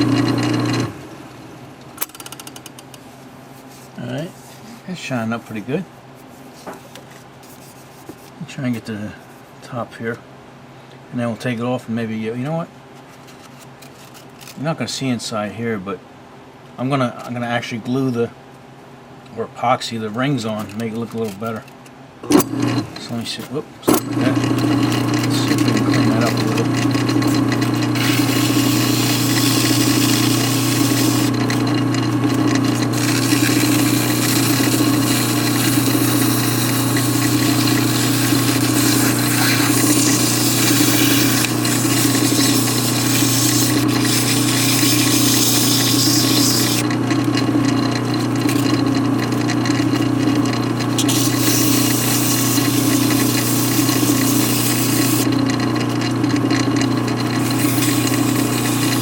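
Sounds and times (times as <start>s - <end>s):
lathe motor running: 0.0s - 1.2s, 22.3s - 23.0s, 23.9s - 59.0s.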